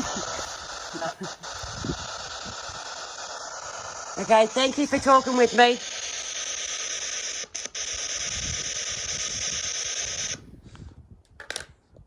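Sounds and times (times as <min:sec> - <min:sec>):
radio static hissing: 0:00.0 - 0:10.6.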